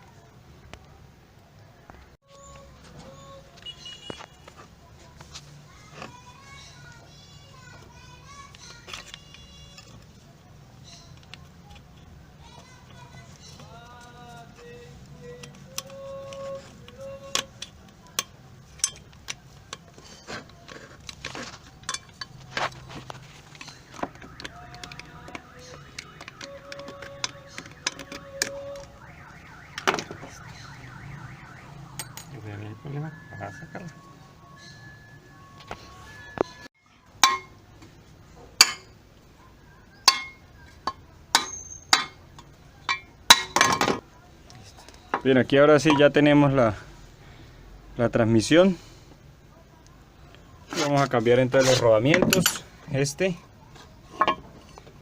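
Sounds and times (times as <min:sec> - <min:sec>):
hand tools clicking and scraping metal: 0:07.6 - 0:29.0, 0:35.6 - 0:39.0, 0:40.0 - 0:46.2, 0:50.6 - 0:53.1, 0:53.7 - 0:55.0
metal striking metal: 0:37.2 - 0:37.6, 0:38.6 - 0:39.0, 0:40.0 - 0:42.2.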